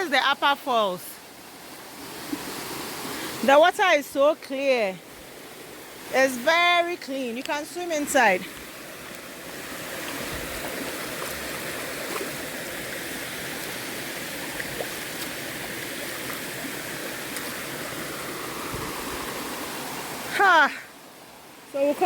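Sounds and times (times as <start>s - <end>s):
small waterfall splashing: 1.2s - 4.0s, 7.8s - 22.0s.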